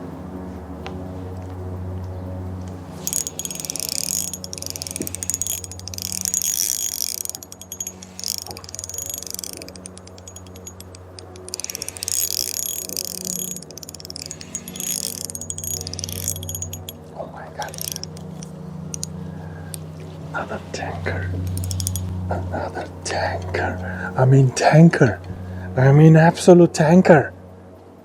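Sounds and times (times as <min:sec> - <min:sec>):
fishing reel drag clicking: 0:02.9 - 0:17.0, 0:17.6 - 0:19.1, 0:21.5 - 0:22.1.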